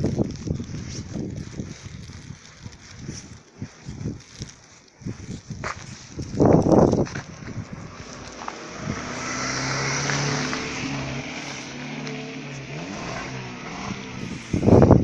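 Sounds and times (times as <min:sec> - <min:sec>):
vehicle driving past: 0:07.6 - 0:15.0.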